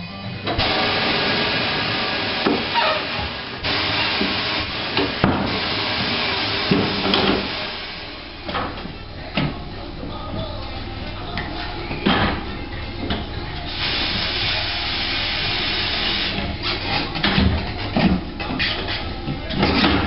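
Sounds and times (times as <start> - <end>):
loud steady hiss: 0.6 - 8.6, 13.6 - 16.6.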